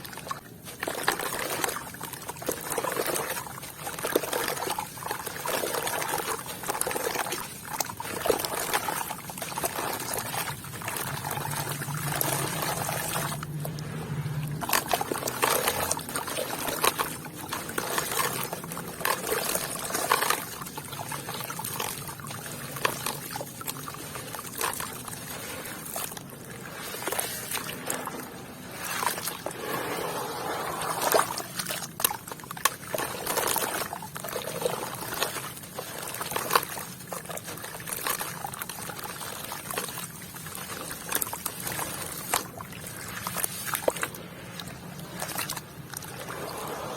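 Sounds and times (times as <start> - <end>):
water trickling through sand: 0.0 - 46.9.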